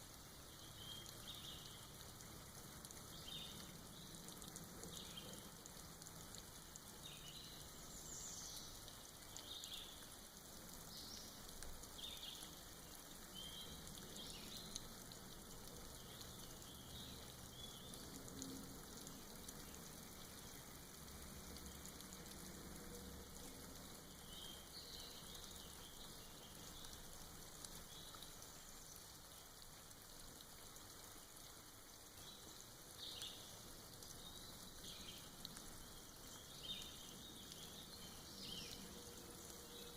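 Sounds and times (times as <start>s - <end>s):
soft rain dripping: 0.0s - 39.9s.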